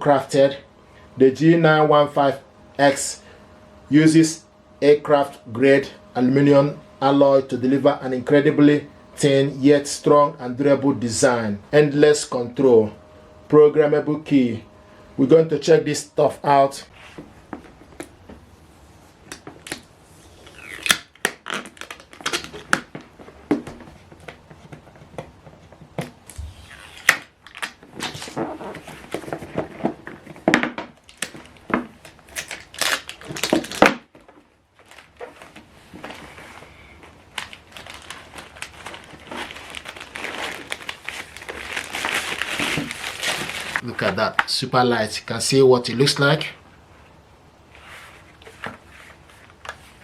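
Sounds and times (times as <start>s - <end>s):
cardboard packaging crinkling and tearing: 19.6s - 25.0s, 26.2s - 30.4s, 31.0s - 43.9s.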